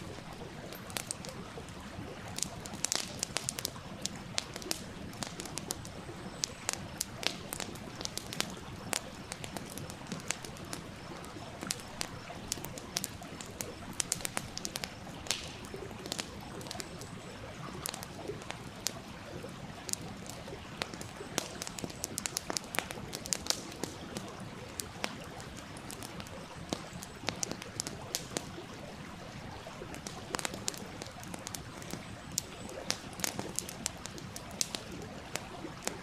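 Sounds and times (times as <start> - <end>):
flowing stream: 0.0 - 36.0
wood fire crackling and popping: 0.0 - 36.0.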